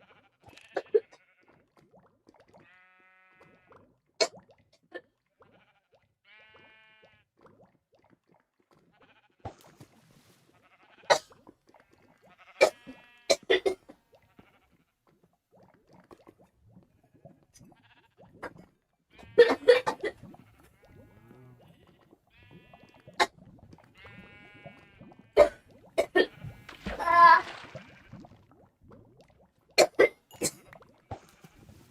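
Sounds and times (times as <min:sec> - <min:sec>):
girl coughing: 0:19.4 - 0:20.2
girl making throaty vocal sounds: 0:26.9 - 0:27.6.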